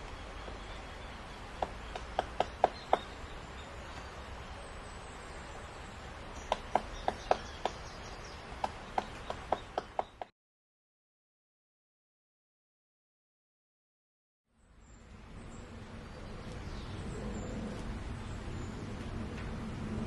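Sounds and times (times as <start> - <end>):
woodpecker pecking at wood: 1.5 - 3.2, 6.4 - 10.3.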